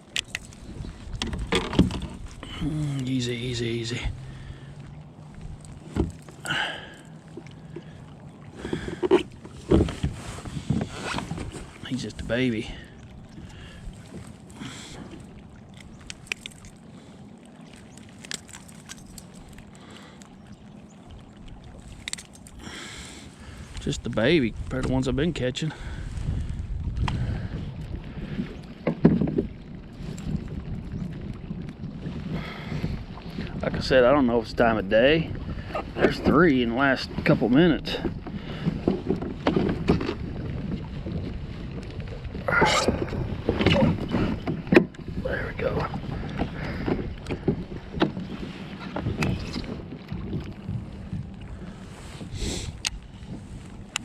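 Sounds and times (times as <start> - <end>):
water lapping against kayak hull: 0.0 - 54.0
wind rumbling on microphone: 0.0 - 54.0
handling knocks and clicks: 0.1 - 2.2.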